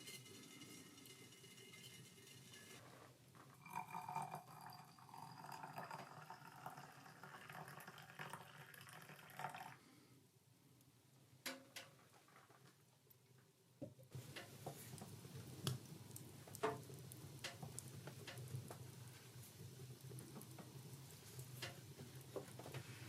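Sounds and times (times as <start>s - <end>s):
liquid pouring into container: 3.6s - 9.8s.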